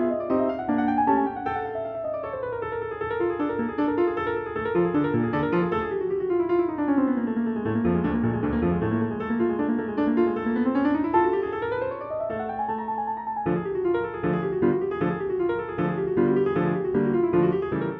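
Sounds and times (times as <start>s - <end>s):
piano melody: 0.0s - 17.9s.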